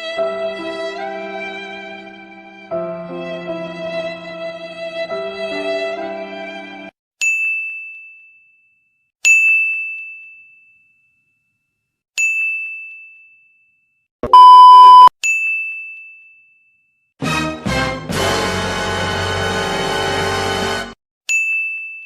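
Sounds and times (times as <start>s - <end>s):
sad string music: 0.0s - 6.9s
loud harsh beep: 14.2s - 15.1s.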